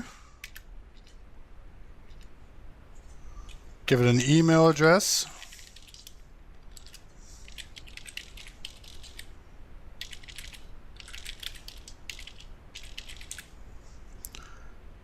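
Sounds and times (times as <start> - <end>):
keyboard typing: 0.4 - 1.2, 5.4 - 9.3, 10.0 - 13.5.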